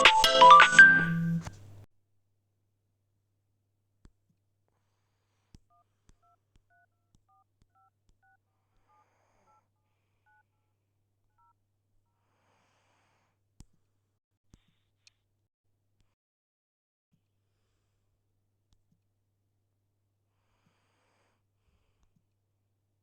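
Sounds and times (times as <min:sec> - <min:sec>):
phone keypad dial tones: 0:05.7 - 0:09.6.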